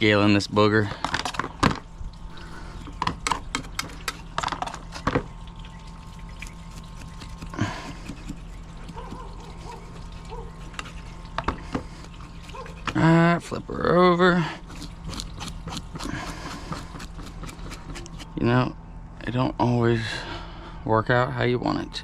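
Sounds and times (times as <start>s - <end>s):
water trickling: 1.8s - 15.9s
knife scraping fish scales: 6.4s - 13.0s, 14.6s - 18.3s.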